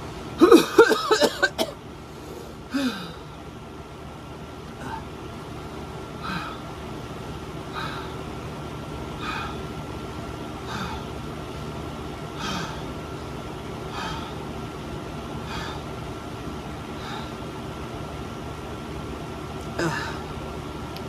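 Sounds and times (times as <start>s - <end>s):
steady hum: 0.0s - 21.0s
person breathing hard: 2.1s - 3.4s, 4.8s - 5.2s, 6.1s - 6.8s, 7.6s - 8.4s, 9.1s - 9.8s, 10.6s - 11.2s, 12.3s - 14.6s, 15.3s - 16.0s, 16.6s - 17.6s, 19.8s - 20.6s.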